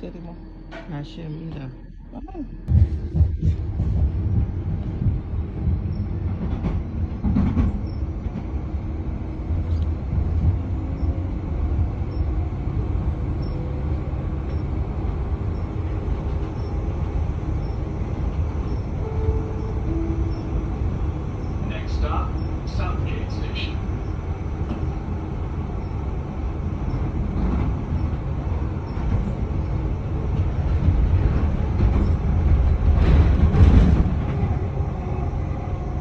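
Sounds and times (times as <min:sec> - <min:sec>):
train rumbling on track: 0:00.0 - 0:36.0.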